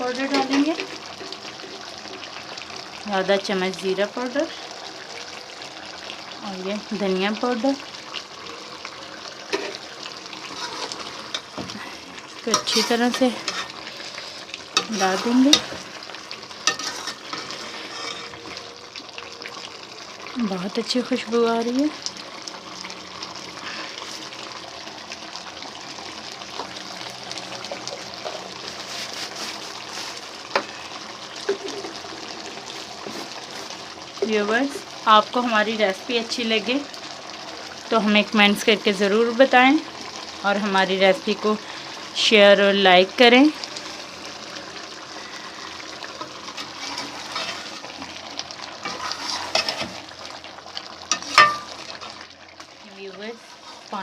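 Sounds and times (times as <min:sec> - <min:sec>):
sauce simmering and sizzling: 0:00.0 - 0:54.0
spoon scraping a pan: 0:09.5 - 0:11.7, 0:12.5 - 0:15.9, 0:16.6 - 0:18.6, 0:46.1 - 0:48.1, 0:48.8 - 0:50.1, 0:51.1 - 0:52.2.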